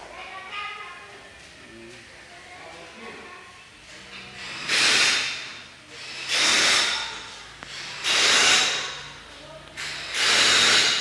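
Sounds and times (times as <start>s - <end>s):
compressed air hissing: 4.4s - 9.2s, 9.8s - 11.0s.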